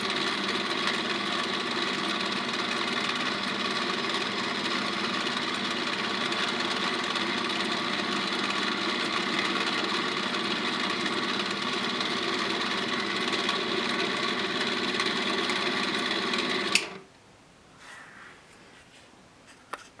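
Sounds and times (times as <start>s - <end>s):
small motor running: 0.0s - 17.0s
faint scratchy handling sounds: 17.7s - 20.0s.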